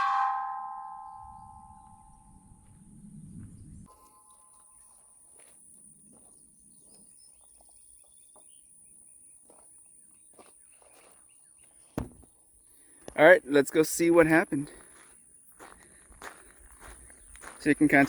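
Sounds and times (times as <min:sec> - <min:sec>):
steel tank ringing from pellet strike: 0:00.0 - 0:02.3
soft bird chirps: 0:03.2 - 0:12.0.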